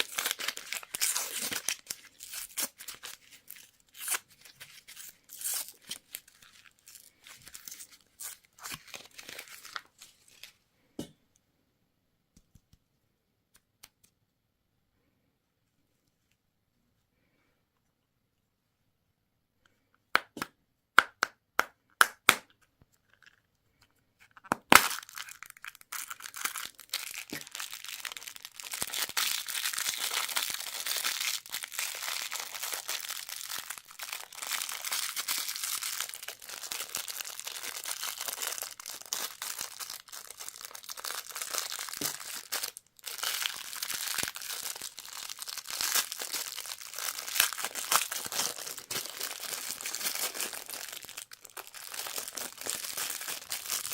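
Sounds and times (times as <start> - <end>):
candy wrappers crinkling and tearing: 0.0 - 10.6, 23.0 - 53.9.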